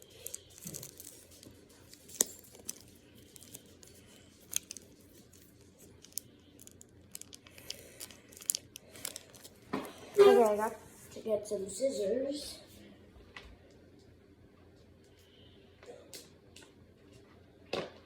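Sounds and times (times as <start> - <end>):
packaging clicks and crinkles: 0.0 - 10.6.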